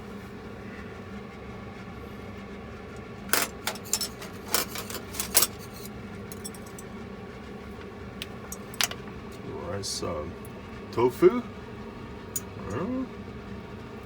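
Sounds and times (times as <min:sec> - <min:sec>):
steady low hum: 0:00.0 - 0:14.0
utensils clinking against dishes: 0:03.3 - 0:06.9.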